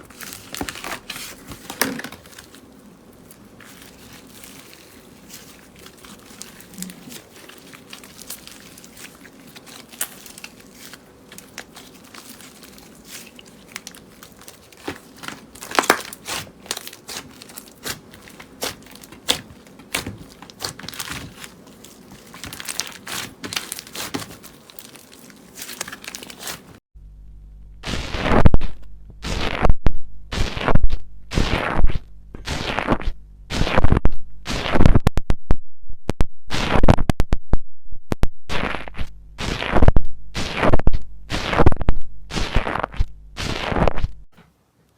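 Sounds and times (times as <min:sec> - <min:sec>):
slime crunching: 0:00.0 - 0:26.8
slime clicking and crackling: 0:00.2 - 0:26.8.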